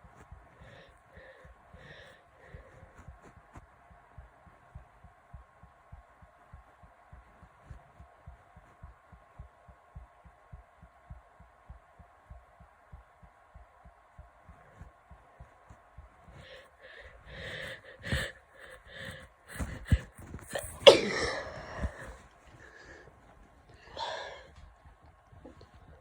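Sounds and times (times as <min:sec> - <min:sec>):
person gasping for breath: 0:00.5 - 0:03.2, 0:16.3 - 0:24.7
breathy burst: 0:16.4 - 0:24.7
person sneezing loudly: 0:20.4 - 0:22.2.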